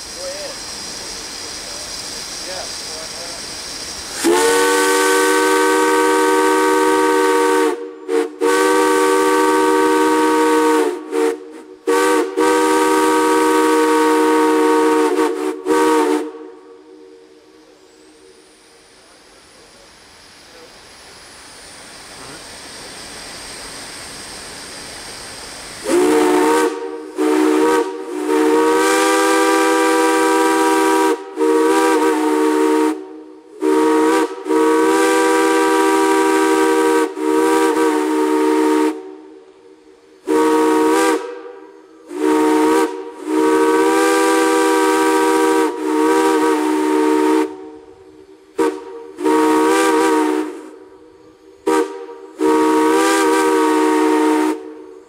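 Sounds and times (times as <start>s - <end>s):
steam hiss: 0.0s - 55.0s
chime steam whistle: 4.2s - 18.7s, 25.8s - 39.2s, 40.0s - 55.0s.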